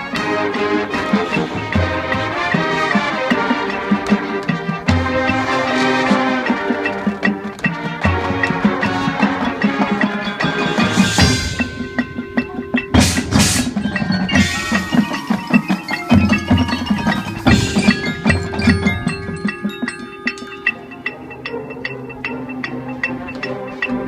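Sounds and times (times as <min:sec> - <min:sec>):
marching band playing: 0:00.0 - 0:24.0
cymbal crashes: 0:12.8 - 0:18.7.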